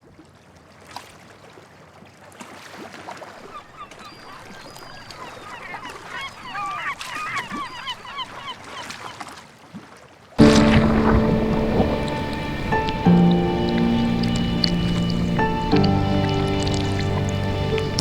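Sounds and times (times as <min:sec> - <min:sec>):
flock of birds calling: 0:03.6 - 0:08.7, 0:10.4 - 0:18.0.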